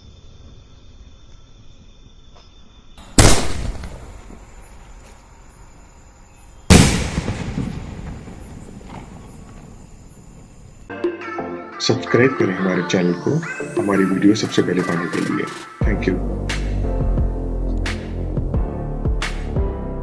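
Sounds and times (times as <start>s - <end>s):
firework shell booms: 3.0s - 4.5s, 6.7s - 10.5s.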